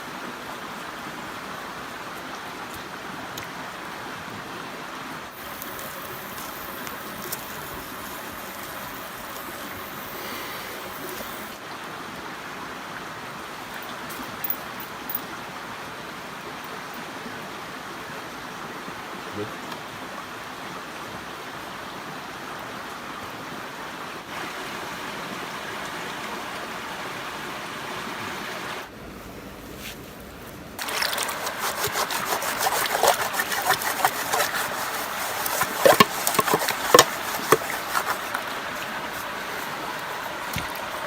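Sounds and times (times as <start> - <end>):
river rushing: 30.8 - 41.0.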